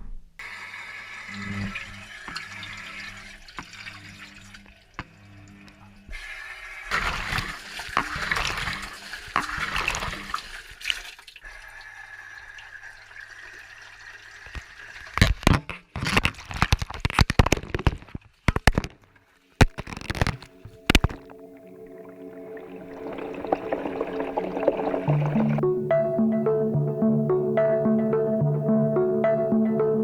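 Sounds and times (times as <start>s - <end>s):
water running and splashing: 6.9s - 11.4s, 20.4s - 25.6s.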